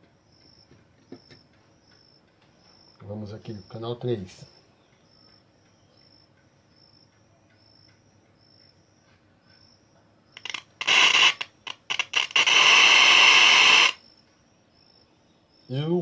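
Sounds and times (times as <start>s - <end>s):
radio static hiss: 10.4s - 14.0s.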